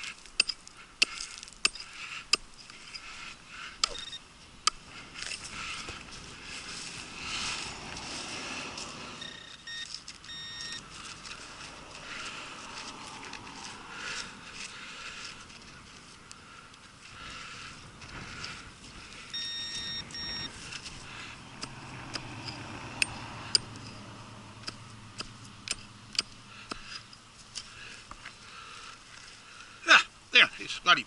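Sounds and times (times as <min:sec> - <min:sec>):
sharp metallic clinks: 0:00.4 - 0:03.2, 0:21.6 - 0:27.7
short electronic beeps: 0:03.8 - 0:04.2, 0:09.2 - 0:10.8, 0:19.3 - 0:20.5
rustling and shuffling: 0:04.4 - 0:21.4.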